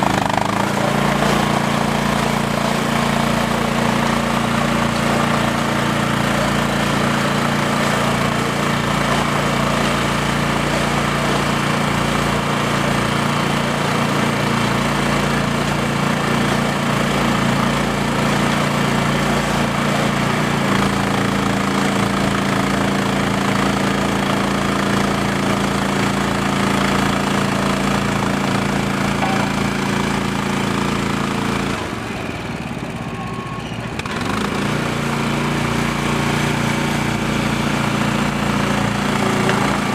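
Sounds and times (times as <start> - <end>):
engine running under load: 0.0 - 39.9.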